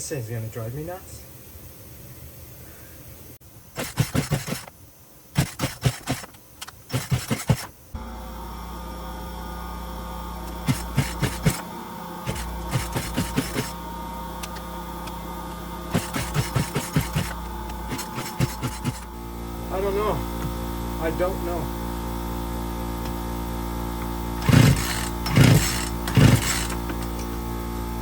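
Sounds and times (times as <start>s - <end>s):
electrical hum: 0.0s - 28.0s
chainsaw pull-start clicks: 3.8s - 4.8s, 5.4s - 7.8s, 10.4s - 13.8s, 15.9s - 19.1s, 24.0s - 27.4s.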